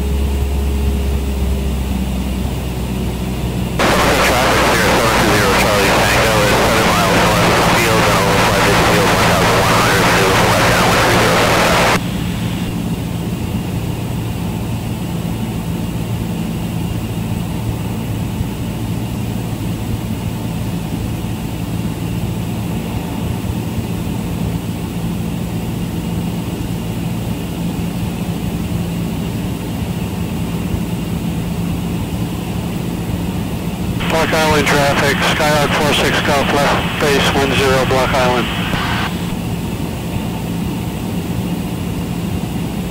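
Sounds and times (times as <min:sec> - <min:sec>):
airplane engine drone: 0:00.0 - 0:42.9
loud hiss: 0:34.0 - 0:39.4.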